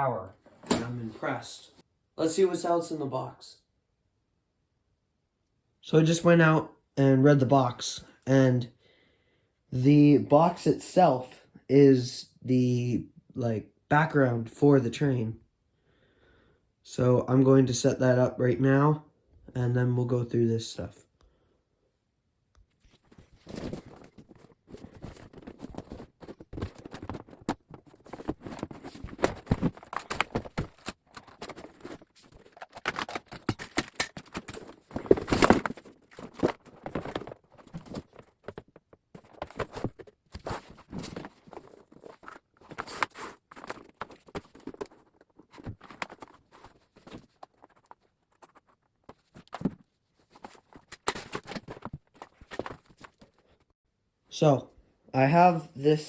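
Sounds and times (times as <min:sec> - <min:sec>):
cardboard taps and rustles: 0:23.0 - 0:53.4.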